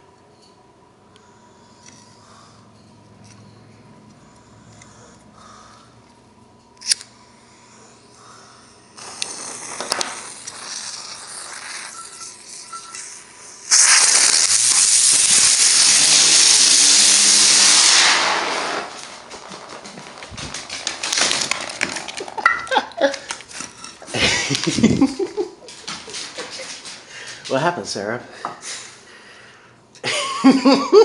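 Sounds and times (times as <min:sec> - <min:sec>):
firecracker hissing in a frying pan: 0:08.9 - 0:22.5.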